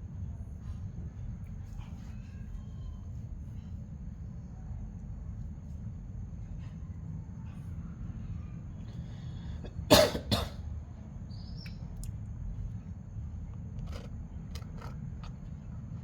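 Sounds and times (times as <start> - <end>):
low steady rumble: 0.0 - 16.0
person coughing: 9.6 - 10.6.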